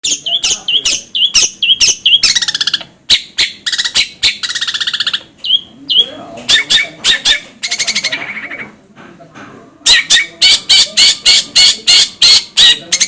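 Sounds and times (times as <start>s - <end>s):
shrike singing sharp chips: 0.0s - 8.6s
buzzy rattling bird phrases: 0.0s - 8.8s, 9.8s - 13.0s.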